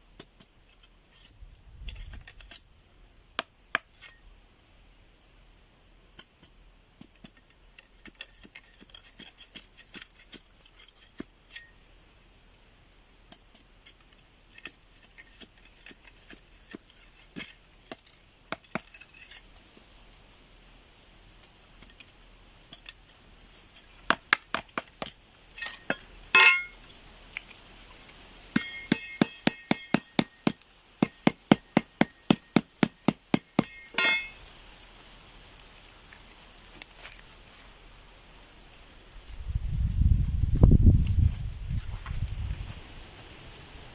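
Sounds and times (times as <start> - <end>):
hand tool taps and clinks: 24.1 - 26.8, 28.6 - 34.4
ringing tool strikes: 33.6 - 34.4.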